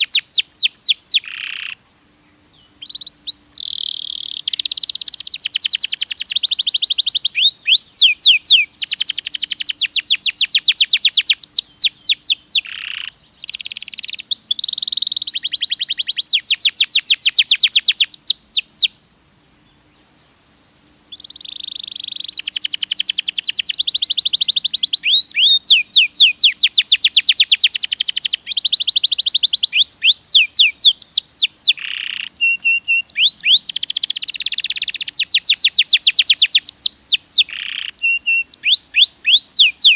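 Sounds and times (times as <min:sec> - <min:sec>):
canary singing trills: 0:00.0 - 0:19.0, 0:21.1 - 0:39.9.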